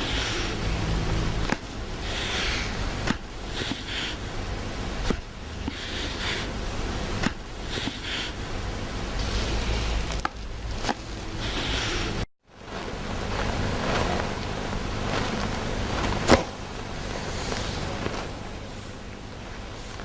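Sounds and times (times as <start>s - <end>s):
background hiss: 0.0s - 20.0s
rustling: 9.2s - 20.0s.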